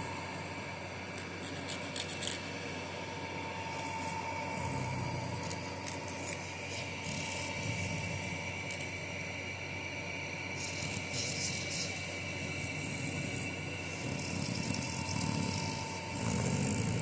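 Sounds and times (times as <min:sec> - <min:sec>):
steady hum: 0:00.0 - 0:17.0
nail file rasping: 0:01.4 - 0:02.4.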